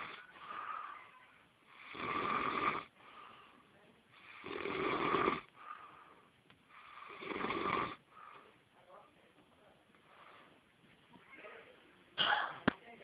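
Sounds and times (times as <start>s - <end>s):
quiet breaths: 0.0s - 12.2s
man snoring: 1.7s - 2.9s, 4.3s - 5.5s, 6.8s - 8.0s.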